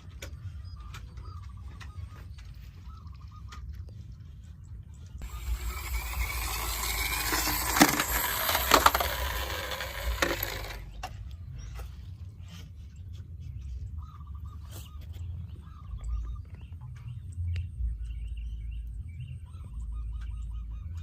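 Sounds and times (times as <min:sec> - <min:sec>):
small hard toys rattling: 0:05.2 - 0:11.0.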